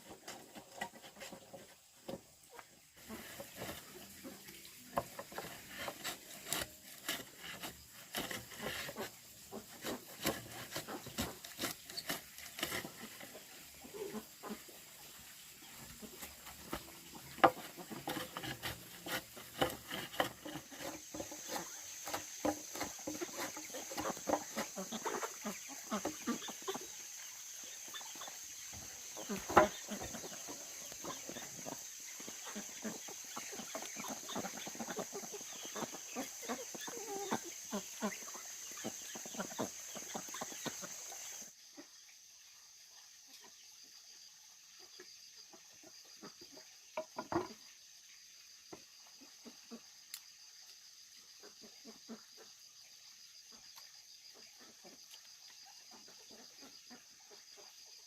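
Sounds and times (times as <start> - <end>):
chickens clucking: 0.0 - 42.0, 44.8 - 47.7, 51.3 - 52.7, 53.5 - 58.0
wood knocking and rubbing: 3.0 - 13.5, 16.0 - 26.7, 28.3 - 35.9.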